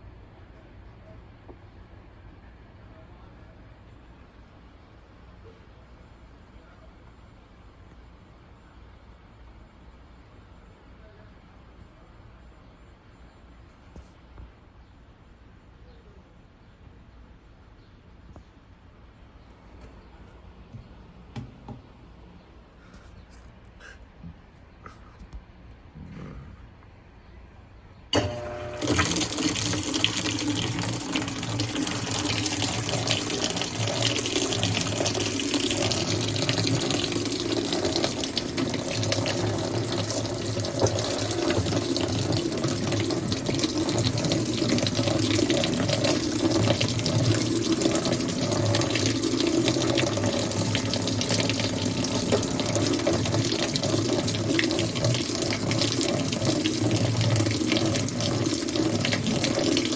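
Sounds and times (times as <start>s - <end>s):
water pouring into washing machine: 28.2s - 59.9s.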